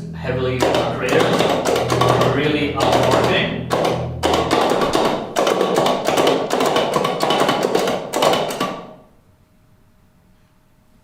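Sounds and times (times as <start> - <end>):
rapid typing on mechanical keyboard: 0.6 - 8.8.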